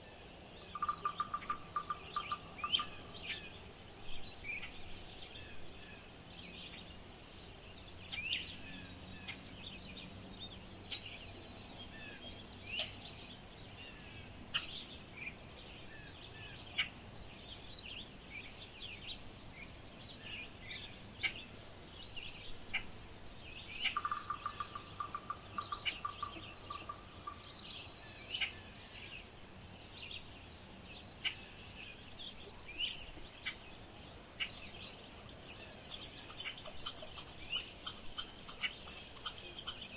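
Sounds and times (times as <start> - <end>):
small birds chirping: 0.0 - 39.9
bird trill: 33.4 - 39.9.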